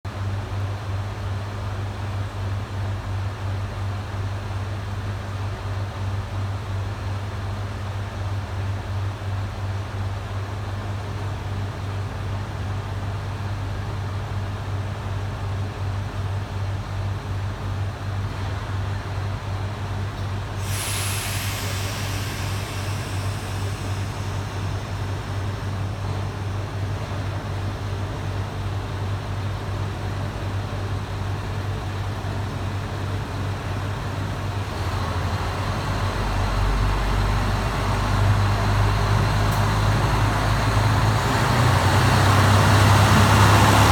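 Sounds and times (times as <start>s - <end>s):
diesel engine idling: 20.5s - 43.9s
air brake hiss: 20.6s - 26.5s
engine revving up: 34.8s - 43.9s.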